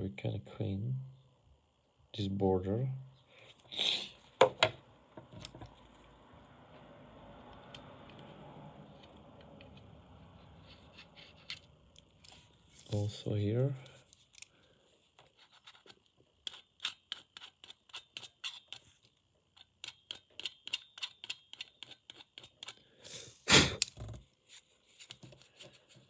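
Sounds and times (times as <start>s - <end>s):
puff of breath: 23.0s - 23.8s.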